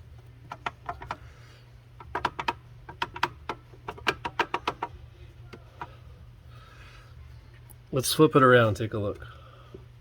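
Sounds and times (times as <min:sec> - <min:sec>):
low steady hum: 0:00.0 - 0:10.0
light clicks and taps of parts: 0:00.2 - 0:01.3, 0:02.0 - 0:06.0.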